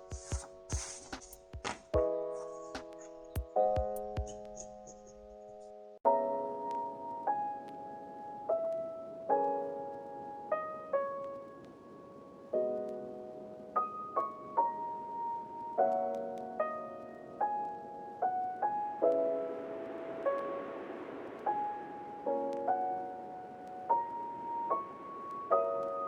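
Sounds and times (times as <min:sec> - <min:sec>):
slow piano music: 0:00.0 - 0:26.0.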